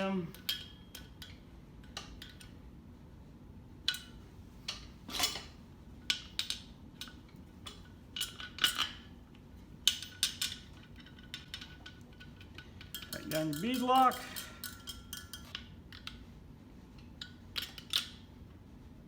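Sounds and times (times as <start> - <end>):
metallic clinks of hand tools: 12.9 - 15.6.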